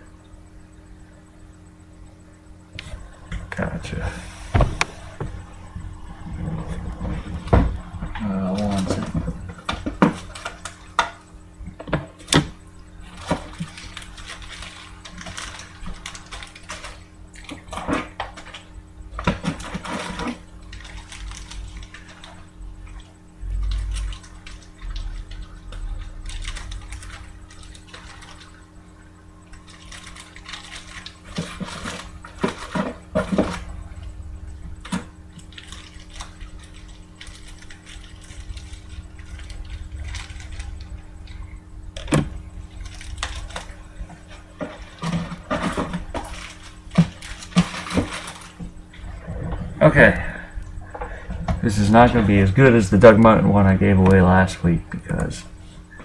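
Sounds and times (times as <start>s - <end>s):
low electrical hum: 0.0s - 56.0s
dull low thump: 4.4s - 8.2s.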